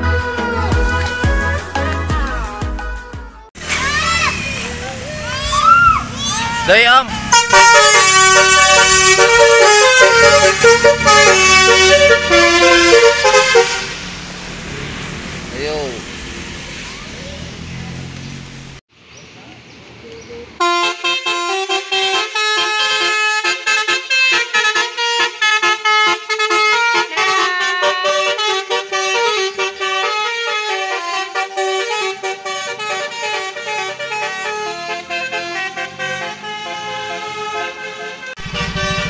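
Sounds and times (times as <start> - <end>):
musical air horn playing a tune: 7.2 - 14.1, 20.6 - 39.0.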